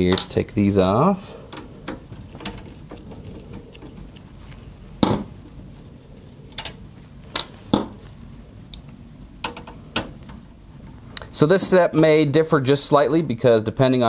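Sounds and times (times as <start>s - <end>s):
hardware clicks and knocks: 0.0s - 0.4s, 1.5s - 4.1s, 9.4s - 10.4s.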